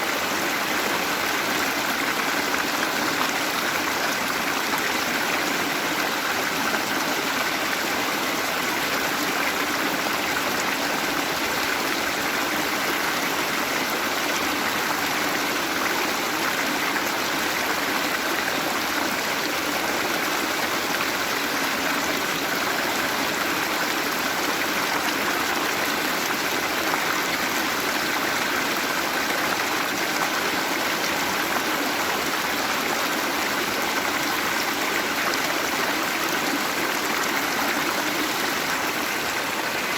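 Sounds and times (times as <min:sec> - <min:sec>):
waterfall rushing: 0:25.6 - 0:39.9.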